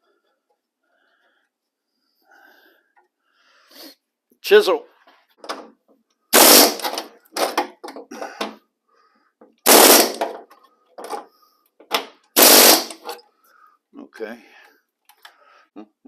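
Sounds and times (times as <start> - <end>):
air chisel rattling: 6.4 - 8.1, 12.4 - 13.2.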